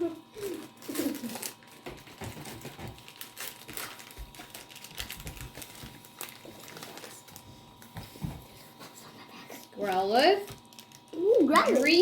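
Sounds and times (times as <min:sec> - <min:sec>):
wrapper and cards rustling: 0:00.3 - 0:08.1.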